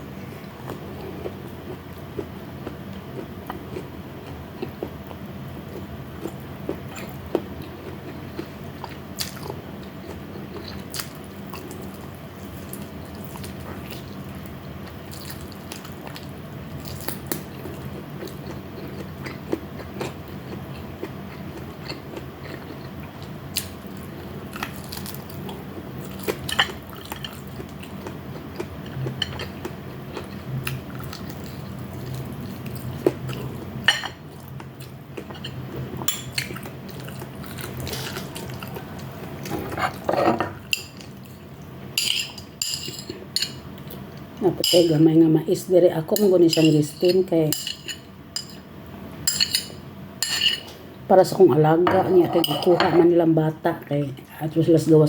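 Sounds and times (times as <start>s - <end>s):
chewing and mouth noises: 15.1s - 33.7s, 34.3s - 40.1s
dishes and cutlery clinking: 42.0s - 43.6s, 49.3s - 50.8s, 51.8s - 53.1s.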